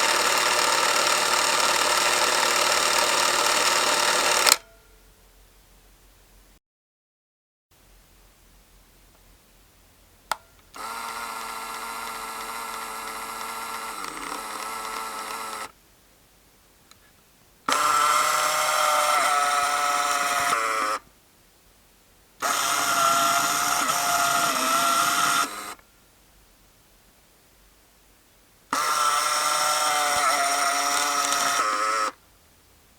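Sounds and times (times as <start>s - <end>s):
film camera motor whirring: 0.0s - 4.6s, 10.7s - 15.8s, 17.7s - 21.0s, 22.4s - 25.8s, 28.7s - 32.2s
camera click: 0.0s - 4.7s, 10.3s - 15.8s, 28.7s - 32.2s.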